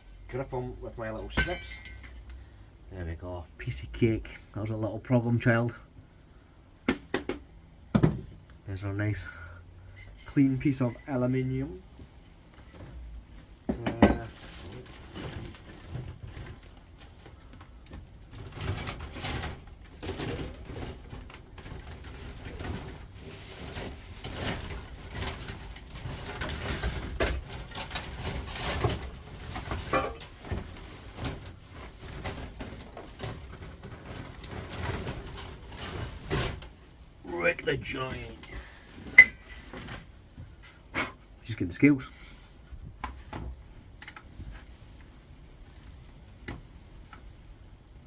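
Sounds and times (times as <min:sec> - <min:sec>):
metal parts clattering: 0:18.4 - 0:36.5.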